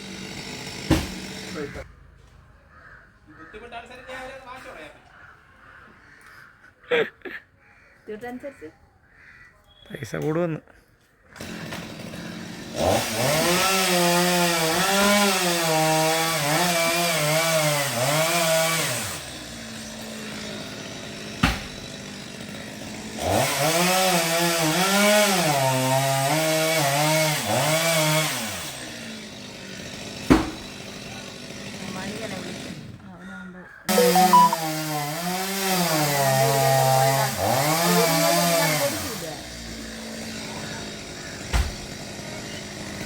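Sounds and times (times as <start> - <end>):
chainsaw cutting wood: 0.0 - 1.8, 11.3 - 33.1, 33.9 - 43.0
sharp knock: 0.9 - 1.2, 21.4 - 21.7, 30.3 - 30.7.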